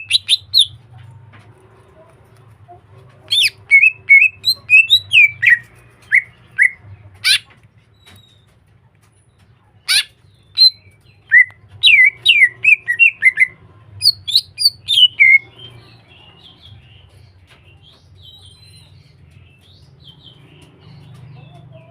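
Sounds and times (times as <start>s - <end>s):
bird whistling song: 0.0s - 0.7s, 3.3s - 8.4s, 9.9s - 15.9s
bird chattering: 0.0s - 1.0s, 1.6s - 8.5s, 9.7s - 21.9s.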